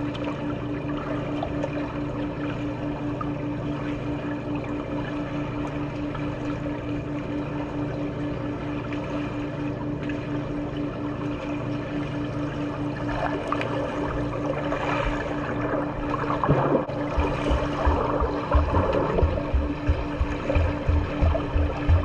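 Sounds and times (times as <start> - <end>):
low pulsing hum: 0.0 - 22.0
swimming pool water noise: 0.0 - 22.0
water splashing: 12.4 - 22.0.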